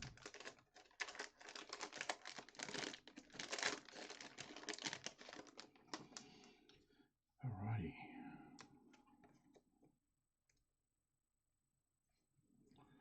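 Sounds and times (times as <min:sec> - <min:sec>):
wax wrapper crinkling: 0:00.0 - 0:06.6.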